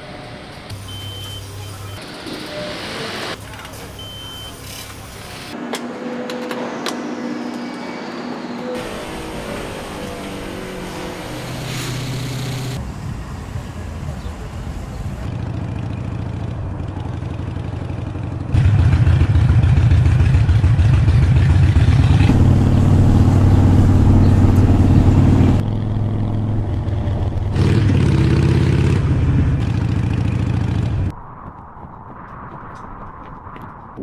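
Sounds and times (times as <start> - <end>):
motorcycle engine revving: 8.8 - 12.8, 15.2 - 31.1.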